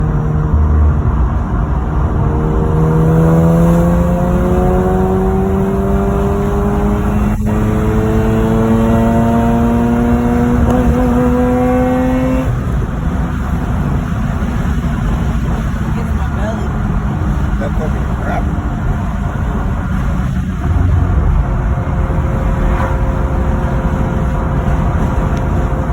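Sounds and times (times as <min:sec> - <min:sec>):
rotary engine accelerating: 0:00.0 - 0:13.1, 0:17.1 - 0:25.9
broad engine rumble: 0:19.4 - 0:25.9.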